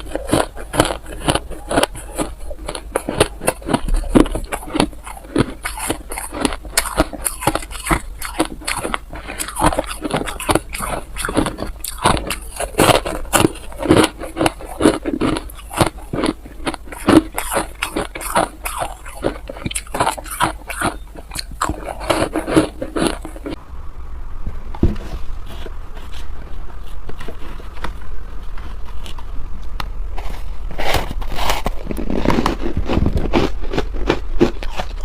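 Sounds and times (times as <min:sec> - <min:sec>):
ice being chewed: 0:00.0 - 0:23.6, 0:30.9 - 0:35.0.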